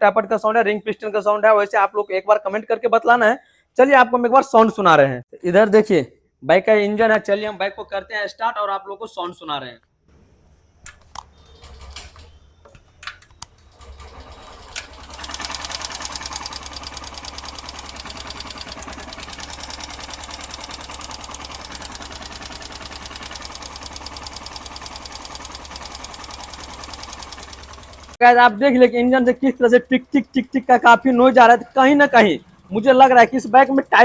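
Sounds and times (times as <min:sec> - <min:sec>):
motorcycle engine idling: 0:13.8 - 0:34.0
rapid valve train ticking: 0:14.8 - 0:34.0.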